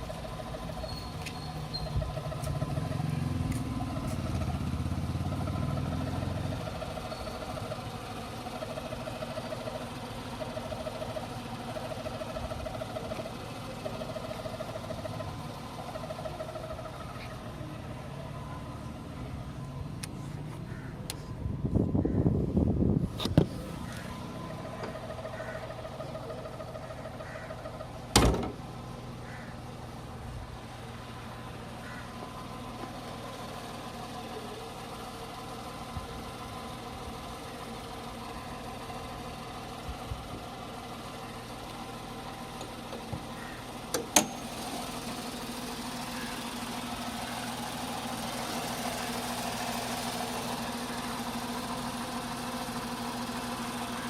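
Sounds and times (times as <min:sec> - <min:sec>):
car engine idling hum: 0:00.0 - 0:54.0
sharp engine knocks: 0:27.3 - 0:28.6.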